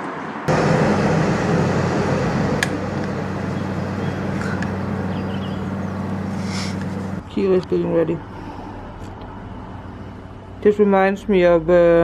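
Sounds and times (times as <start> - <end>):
rushing noise: 0.5 - 7.2
steady mechanical hum: 0.5 - 12.0
faint clicks: 4.4 - 4.8.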